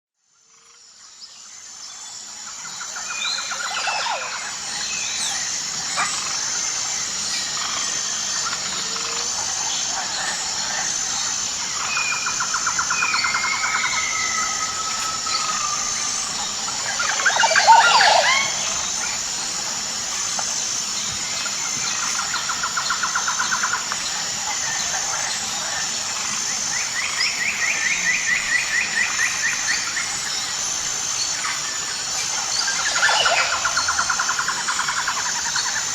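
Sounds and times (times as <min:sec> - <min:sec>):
high insect drone: 0:00.3 - 0:35.9
birds calling in trills: 0:07.3 - 0:19.4.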